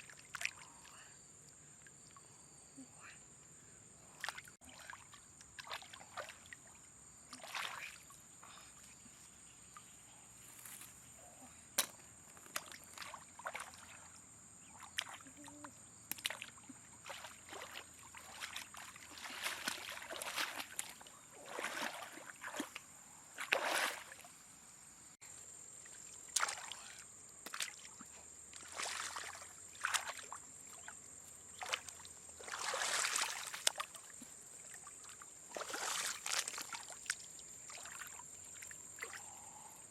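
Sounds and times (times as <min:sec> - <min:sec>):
splashing in shallow water: 0:00.0 - 0:00.9, 0:04.2 - 0:08.2, 0:12.4 - 0:15.5, 0:16.1 - 0:24.3, 0:25.8 - 0:39.4.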